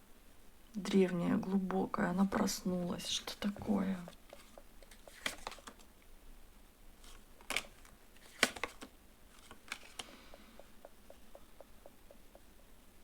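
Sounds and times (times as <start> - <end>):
cards clicking and tapping on table: 4.3 - 5.8, 8.3 - 10.5.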